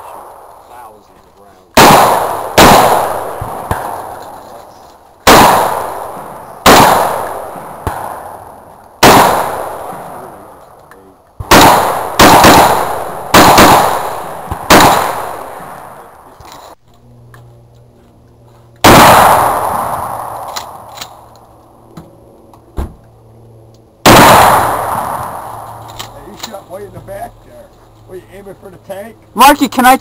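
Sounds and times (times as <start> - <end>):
gunshots echoing: 1.8 - 4.5, 5.2 - 10.7, 11.4 - 16.3, 18.8 - 21.3, 24.0 - 26.2.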